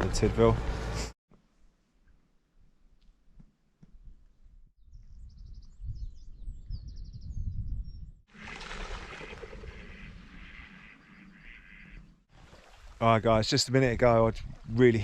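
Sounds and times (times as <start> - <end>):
wind rumble on microphone: 4.0 - 8.2, 14.0 - 14.8
stream running: 8.3 - 10.6, 12.3 - 15.0.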